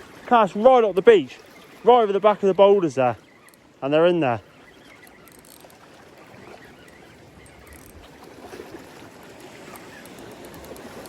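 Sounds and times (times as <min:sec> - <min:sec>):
seawater washing among boulders: 0:00.0 - 0:04.6, 0:05.6 - 0:11.0
small clicks: 0:06.8 - 0:08.0, 0:09.7 - 0:11.0.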